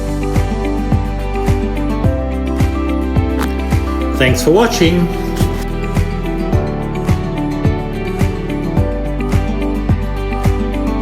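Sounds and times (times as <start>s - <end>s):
background music with steady beat: 0.0s - 11.0s.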